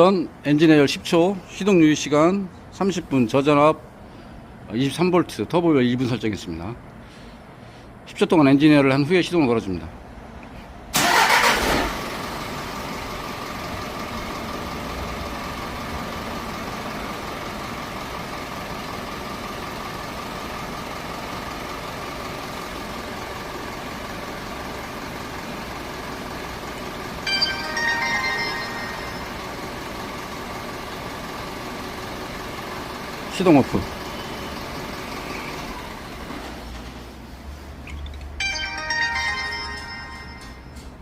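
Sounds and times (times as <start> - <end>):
diesel engine cranking: 10.9 - 15.8
diesel engine idling: 10.9 - 37.6
electronic tones: 27.3 - 29.8.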